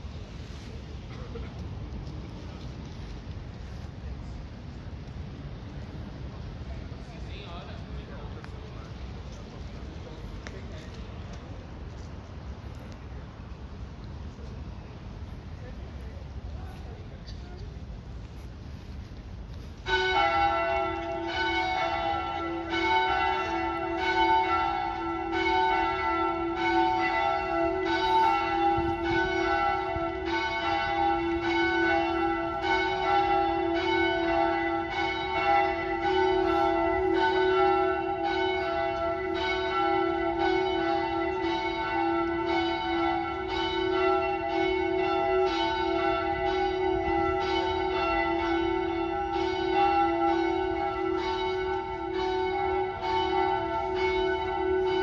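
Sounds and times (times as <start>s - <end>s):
church bells ringing: 18.1s - 55.0s.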